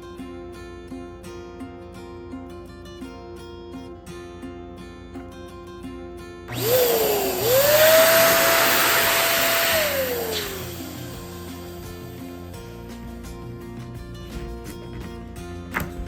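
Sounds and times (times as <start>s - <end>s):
pump motor whine: 6.5s - 12.8s
balloon pump air hiss: 6.7s - 12.8s.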